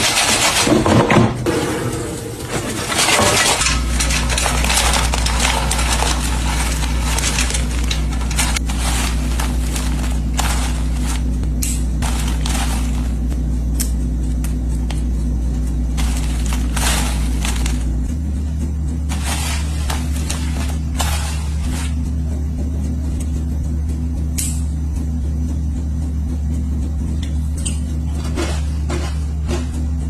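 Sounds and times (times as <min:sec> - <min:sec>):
air fryer fan motor humming: 0:00.0 - 0:30.0
clicks and crackles: 0:02.7 - 0:13.2.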